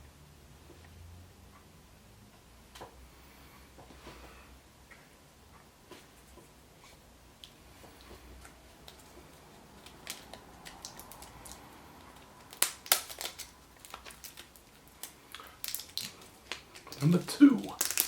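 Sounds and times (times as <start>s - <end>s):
plastic packaging clicks and crinkles: 8.8s - 18.0s
sharp plastic snaps: 9.8s - 18.0s.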